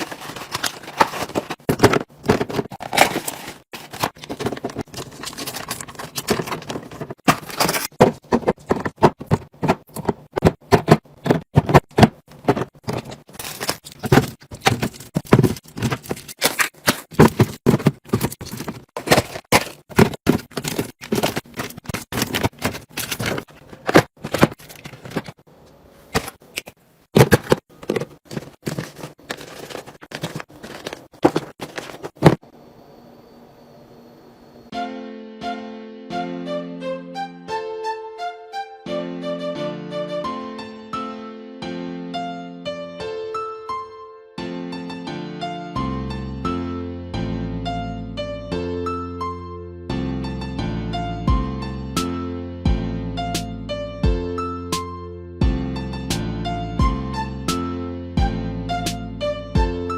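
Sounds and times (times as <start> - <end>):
containers clicking and clattering: 0.0 - 25.4, 26.1 - 32.4.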